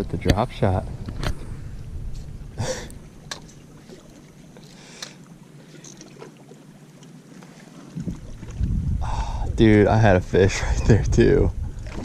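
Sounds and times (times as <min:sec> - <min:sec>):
wind and water wash: 0:00.0 - 0:12.0.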